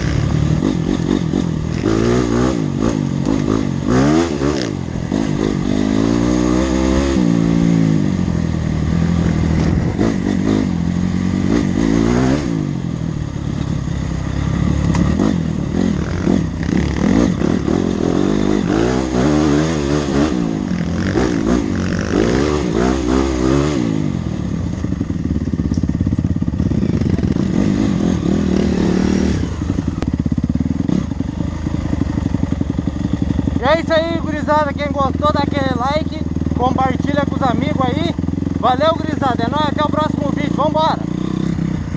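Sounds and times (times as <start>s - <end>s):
dirt bike engine revving: 0.0s - 41.9s.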